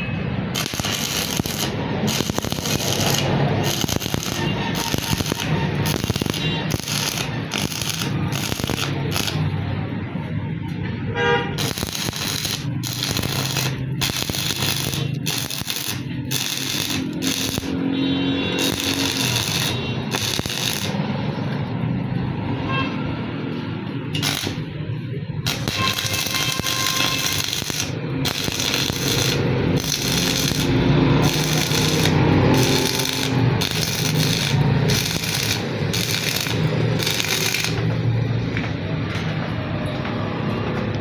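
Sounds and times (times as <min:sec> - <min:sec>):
low welder hum: 0:00.5 - 0:09.6, 0:11.6 - 0:21.0, 0:24.1 - 0:24.8, 0:25.4 - 0:38.2
welding arc crackling: 0:00.5 - 0:09.6, 0:11.6 - 0:17.8, 0:18.6 - 0:21.0, 0:24.1 - 0:24.8, 0:25.4 - 0:38.2.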